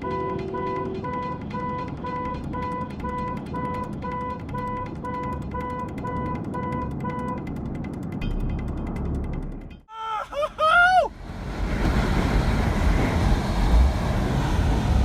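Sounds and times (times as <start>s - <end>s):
low rumble: 11.1s - 15.0s.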